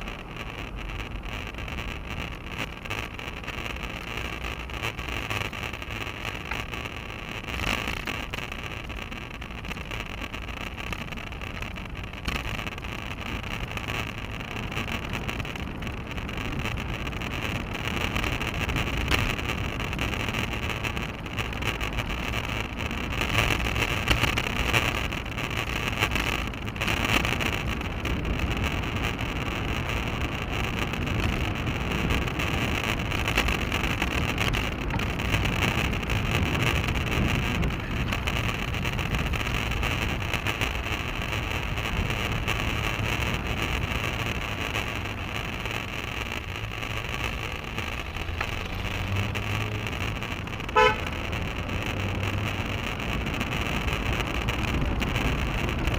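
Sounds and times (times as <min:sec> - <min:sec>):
road rumble: 0:00.0 - 0:55.9.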